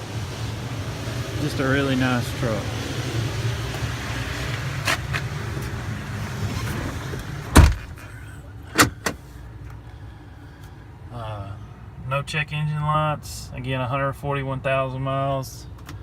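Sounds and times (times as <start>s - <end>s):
truck door slamming: 4.8s - 9.3s.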